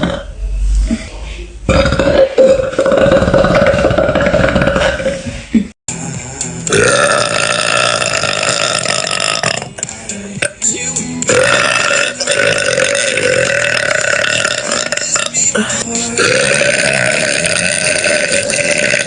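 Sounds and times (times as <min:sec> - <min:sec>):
woman burping: 0:00.0 - 0:00.3, 0:01.7 - 0:05.2, 0:11.3 - 0:19.0.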